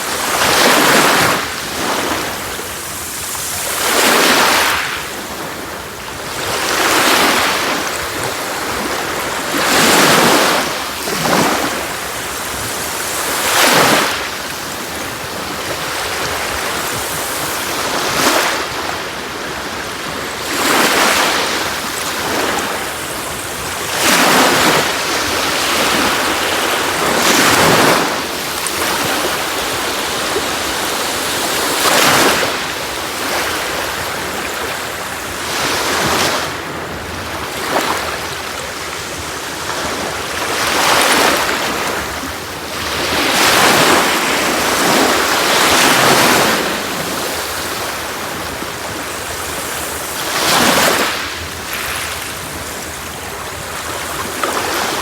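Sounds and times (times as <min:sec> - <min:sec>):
sea waves breaking on shore: 0:00.0 - 0:55.0.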